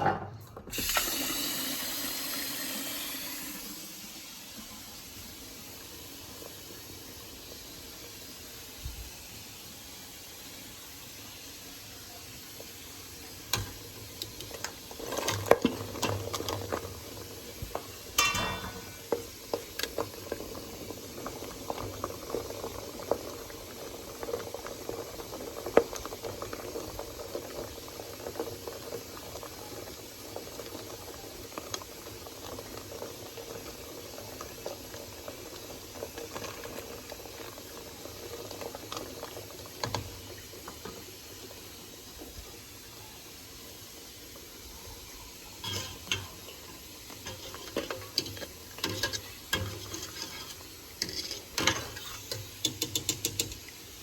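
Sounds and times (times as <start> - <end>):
water boiling in a pot: 0.4 - 54.0
eggs knocking against pot: 52.6 - 53.6.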